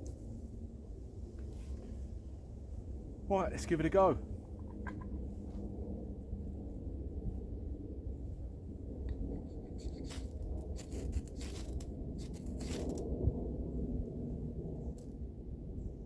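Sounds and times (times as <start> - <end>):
steady low rumble: 0.0 - 16.0
ferro rod scraping strokes: 9.5 - 13.0.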